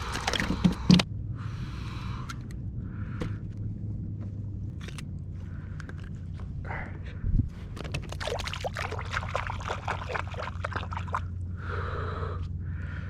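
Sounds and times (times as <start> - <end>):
water splashing and trickling: 7.8 - 11.4.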